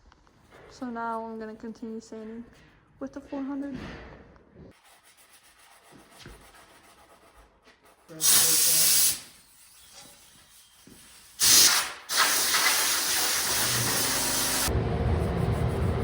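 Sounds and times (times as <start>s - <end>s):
compressed air hissing: 8.2s - 14.7s.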